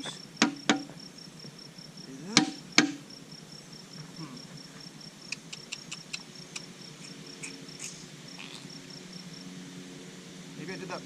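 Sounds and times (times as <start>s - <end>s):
cricket chirping: 0.0s - 11.0s
hammer tapping on metal: 0.4s - 0.9s, 2.3s - 3.0s.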